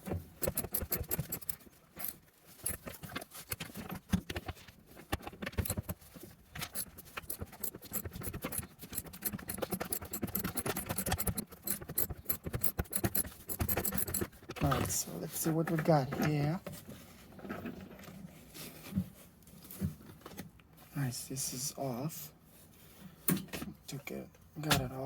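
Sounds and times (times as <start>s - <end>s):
metal tool clicking on bolt: 0.4s - 3.7s, 5.4s - 6.0s, 6.6s - 14.6s.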